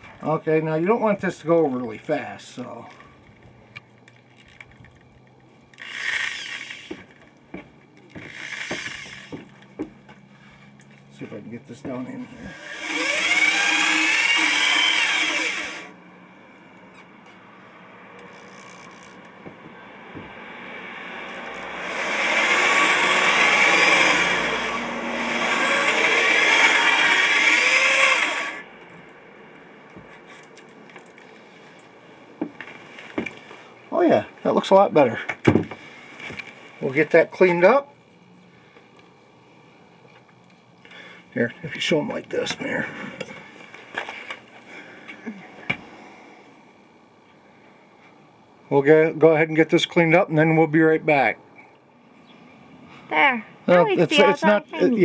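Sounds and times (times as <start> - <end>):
drill spinning hone: 5.8 - 7.0, 8.2 - 9.5, 12.3 - 16.0, 21.3 - 28.7.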